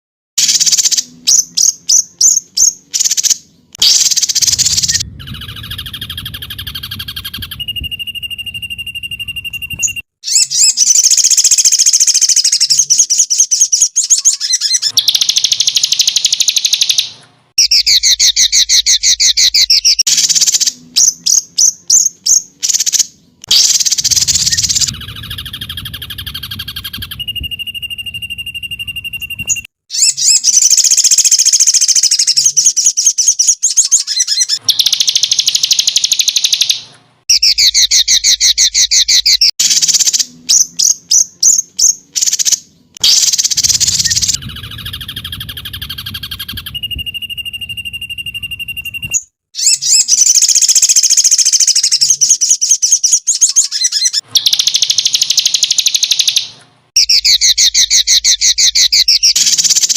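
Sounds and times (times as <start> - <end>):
high bird whistle: 0.4 - 59.9
songbird chirps and trills: 0.4 - 59.9.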